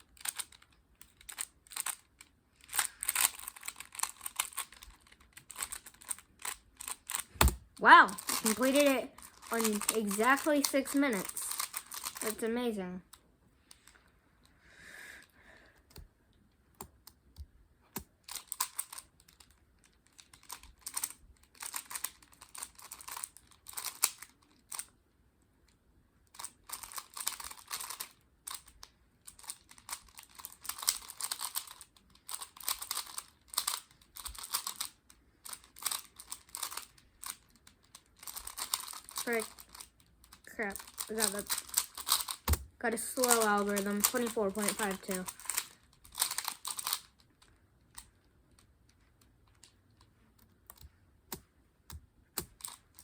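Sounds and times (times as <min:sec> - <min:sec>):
plastic cube clicking: 0:00.0 - 0:12.4, 0:16.8 - 0:24.9, 0:26.4 - 0:53.0.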